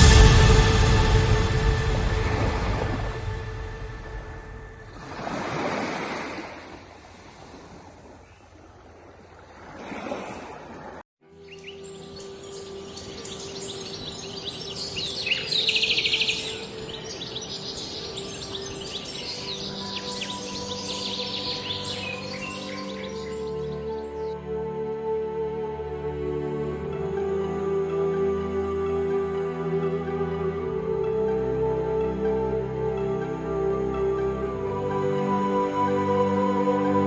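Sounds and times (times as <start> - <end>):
soft ambient music: 0.0 - 5.8, 11.2 - 37.0
waves washing in: 0.0 - 11.0, 11.7 - 24.3
birds chirping: 11.4 - 24.4.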